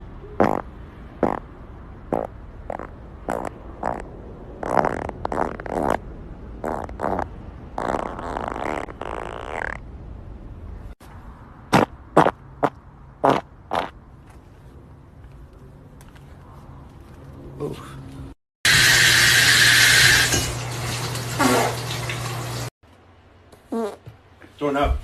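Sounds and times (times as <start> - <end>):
farts: 0.4 - 1.4, 2.1 - 6.0, 6.6 - 9.8, 11.7 - 13.9, 21.4 - 21.8, 23.7 - 24.1.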